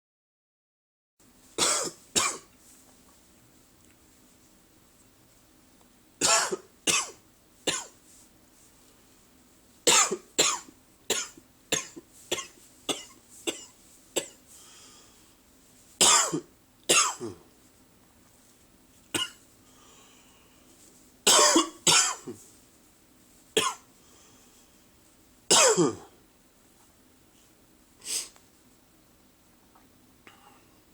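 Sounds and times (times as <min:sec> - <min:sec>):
man coughing: 0:06.2 - 0:07.9, 0:16.0 - 0:17.4, 0:21.3 - 0:22.4, 0:25.5 - 0:26.1.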